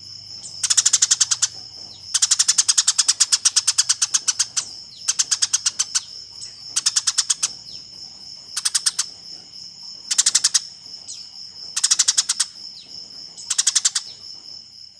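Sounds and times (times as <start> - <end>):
sparrows chirping rapidly: 0.0 - 14.2.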